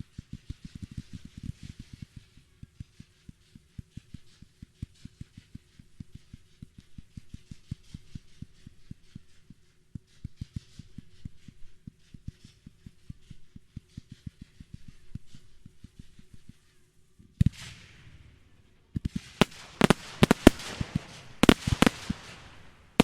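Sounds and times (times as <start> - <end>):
faint crackling hiss: 0.1 - 23.0
fireworks muffled thumps: 19.0 - 23.0.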